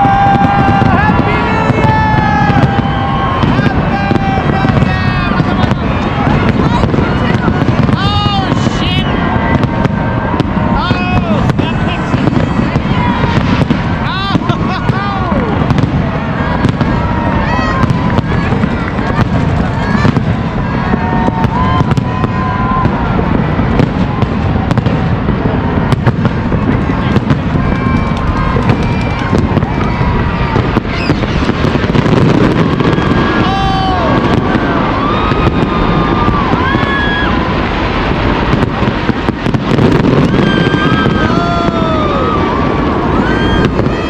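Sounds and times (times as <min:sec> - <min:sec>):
fireworks booming: 0:00.0 - 0:44.0
fireworks crackling pops: 0:00.0 - 0:44.0.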